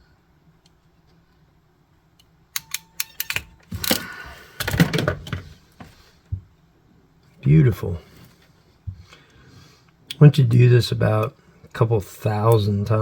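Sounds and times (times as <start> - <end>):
sharp metal clicks: 2.2 - 4.0.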